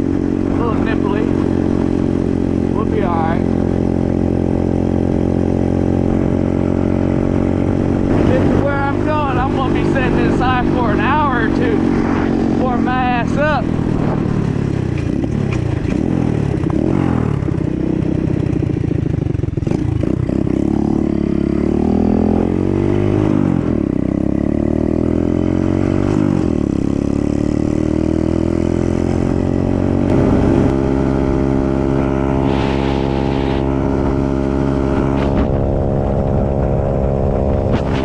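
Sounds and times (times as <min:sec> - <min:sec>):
dirt bike engine running: 0:00.0 - 0:38.0.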